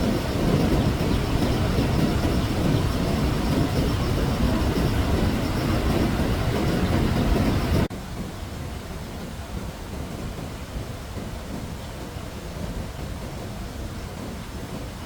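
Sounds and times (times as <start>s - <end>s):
floodwater roaring: 0.0s - 11.2s.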